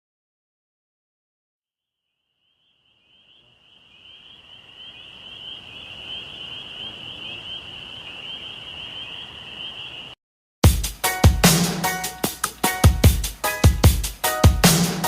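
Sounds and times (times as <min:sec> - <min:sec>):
insect chorus pulsing buzz: 0:02.1 - 0:10.2.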